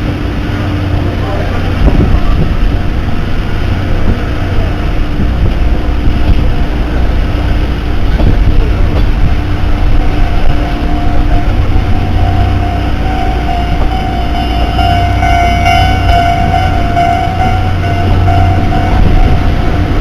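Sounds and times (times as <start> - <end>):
train rumbling on rails: 0.0 - 20.0
steady high tone: 9.3 - 20.0.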